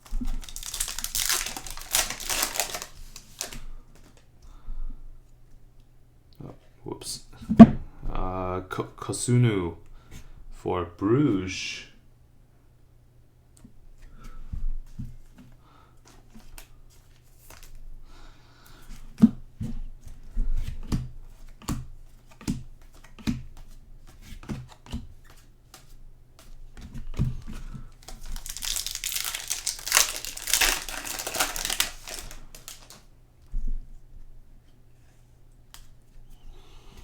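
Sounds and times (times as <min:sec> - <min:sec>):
cards tapping and flicking: 0:00.0 - 0:04.2, 0:24.4 - 0:33.0
wrapper crinkling and tearing: 0:00.0 - 0:04.2, 0:28.0 - 0:33.0.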